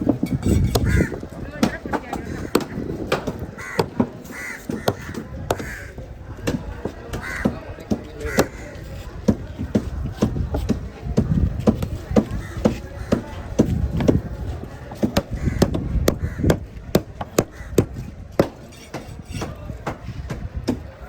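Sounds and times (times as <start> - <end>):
crows cawing: 0.8 - 1.2, 3.6 - 6.0, 7.2 - 7.6, 8.3 - 8.8, 15.3 - 16.6, 17.4 - 17.9.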